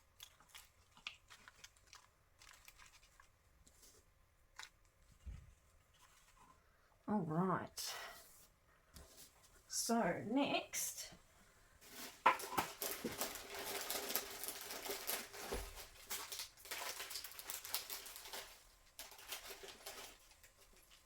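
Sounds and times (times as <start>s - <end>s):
packaging rustling and crinkling: 0.0s - 6.6s, 11.8s - 21.0s.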